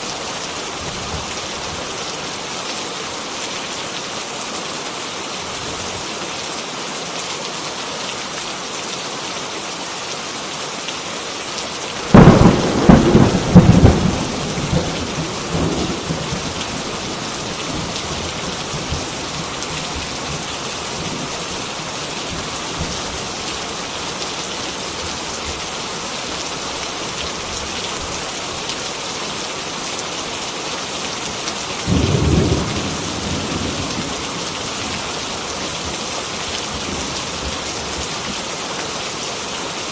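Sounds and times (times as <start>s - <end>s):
heavy rain falling: 0.0s - 39.9s
thunder crack and rumble: 12.0s - 20.4s, 31.9s - 34.3s.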